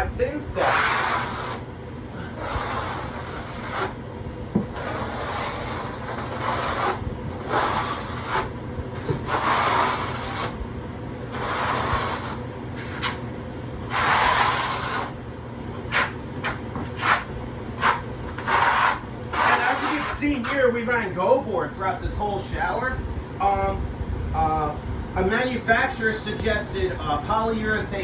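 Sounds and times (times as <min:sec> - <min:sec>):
trowel scraping mortar: 0:00.6 - 0:01.6, 0:02.4 - 0:04.0, 0:04.7 - 0:10.6, 0:11.3 - 0:13.2, 0:13.9 - 0:15.2, 0:17.0 - 0:20.6.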